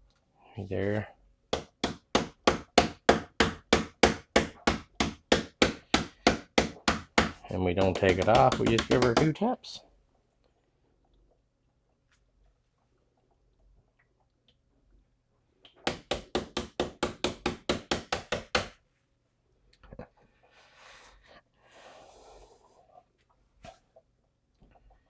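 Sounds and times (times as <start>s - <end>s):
quick tapping on plastic container: 1.6s - 9.4s, 15.9s - 18.7s.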